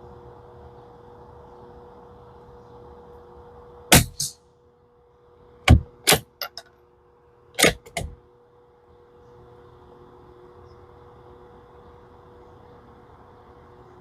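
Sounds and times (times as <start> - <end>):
rifle shot: 3.9 - 4.4
rifle bolt clacking: 7.6 - 8.1.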